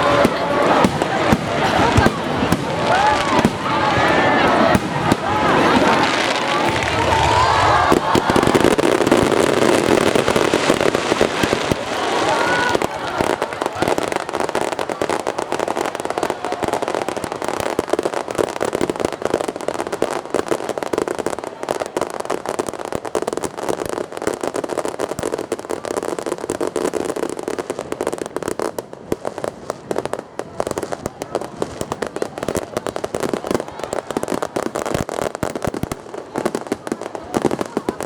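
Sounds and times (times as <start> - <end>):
fireworks bangs and crackles: 0.0 - 38.0.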